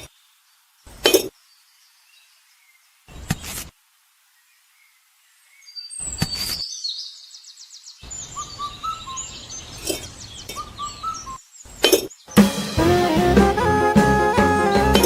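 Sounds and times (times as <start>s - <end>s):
birds chirping and whistling: 5.9s - 7.2s, 8.0s - 15.0s.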